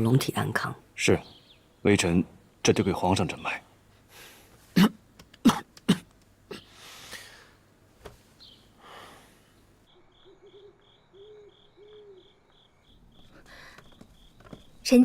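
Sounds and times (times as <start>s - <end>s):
man coughing: 4.8s - 6.6s
wheezy breathing: 6.5s - 7.6s, 8.8s - 9.6s, 13.2s - 14.0s
crickets chirping: 8.4s - 15.0s.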